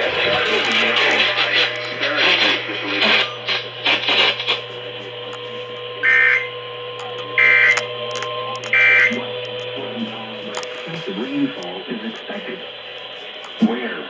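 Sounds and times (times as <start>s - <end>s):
steady electronic hum: 0.0s - 14.0s
harsh warbling digital data bursts: 6.0s - 6.6s, 7.4s - 7.9s, 8.6s - 9.3s.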